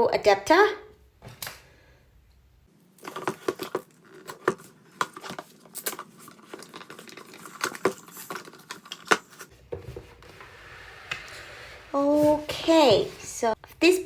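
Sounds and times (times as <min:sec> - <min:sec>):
packaging crinkling and tearing: 0:03.0 - 0:09.5.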